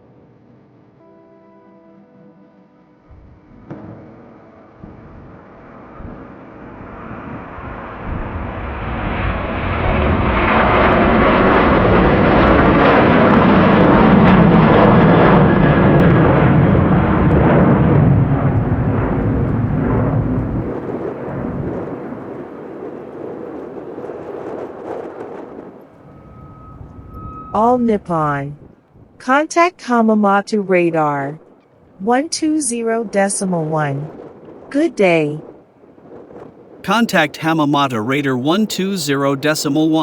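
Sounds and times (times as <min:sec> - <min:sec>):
jet airliner passing: 0:08.9 - 0:27.6.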